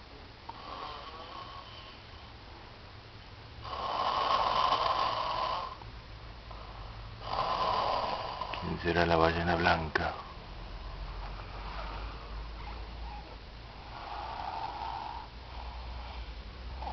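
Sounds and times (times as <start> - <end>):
man snoring: 0.5 - 2.0, 3.6 - 5.8, 6.5 - 10.2, 13.8 - 16.9.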